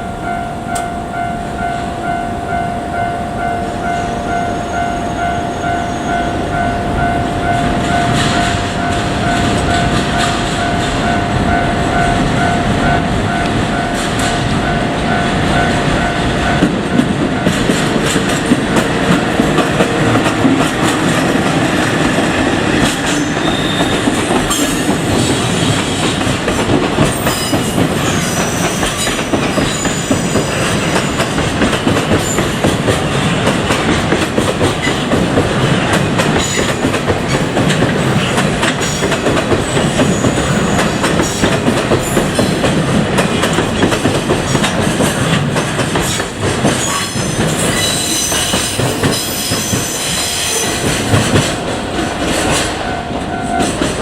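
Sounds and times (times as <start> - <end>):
high wheel squeals: 3.6 - 9.5, 23.0 - 26.0, 27.1 - 31.2, 46.8 - 50.8
freight train wheels clattering: 3.6 - 54.0.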